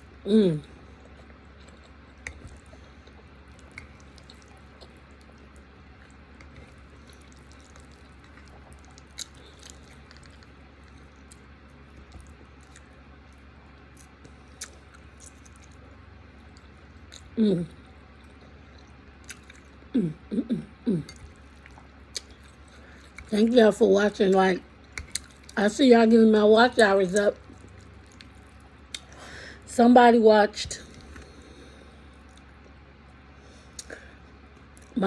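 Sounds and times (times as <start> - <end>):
low steady hum: 0.0 - 35.0
wet chewing mouth sounds: 0.6 - 17.4, 18.2 - 19.9, 21.0 - 23.3, 24.8 - 25.6, 27.2 - 29.2, 33.6 - 34.1.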